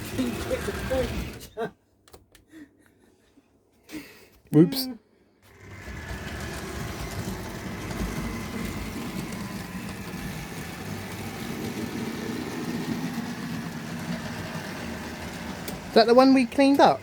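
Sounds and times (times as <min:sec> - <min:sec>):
model train motor whirring: 0:00.0 - 0:01.5, 0:05.5 - 0:17.0
wheel rumble on track: 0:05.6 - 0:17.0.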